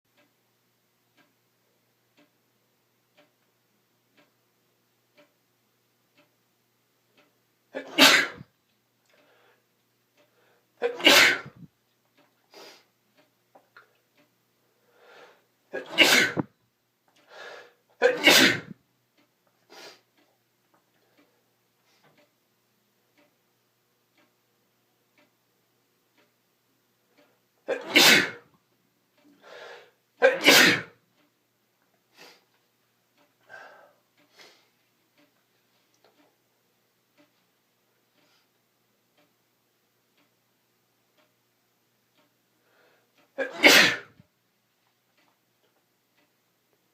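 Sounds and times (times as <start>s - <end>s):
person sneezing: 7.8s - 8.4s, 10.8s - 11.6s, 15.8s - 16.5s, 18.0s - 18.8s, 27.7s - 28.4s, 30.2s - 31.0s, 43.4s - 44.2s
soft breath: 9.1s - 10.7s, 14.7s - 15.5s, 17.2s - 17.8s, 29.3s - 30.0s, 33.4s - 34.8s, 42.6s - 43.2s
short breathy sounds: 14.8s - 15.5s, 29.3s - 30.0s.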